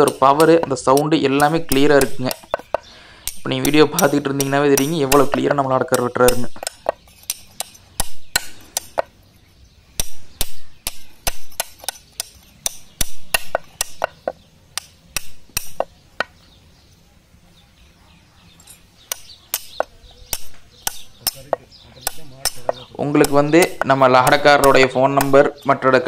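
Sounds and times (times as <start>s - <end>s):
hoof cutter chopping hoof: 0.0s - 9.1s, 19.1s - 25.6s.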